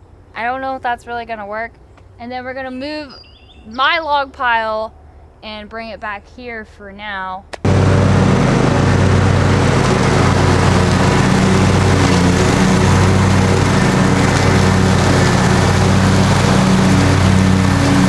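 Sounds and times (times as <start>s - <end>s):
engine running loudly: 7.7s - 18.0s.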